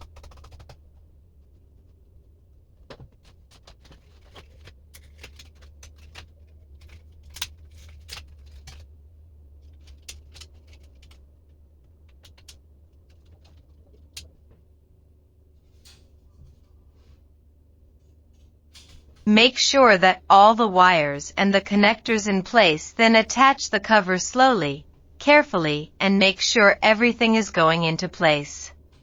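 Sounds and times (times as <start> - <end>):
laptop parts and tools clicking: 3.2 - 8.9, 9.6 - 14.4.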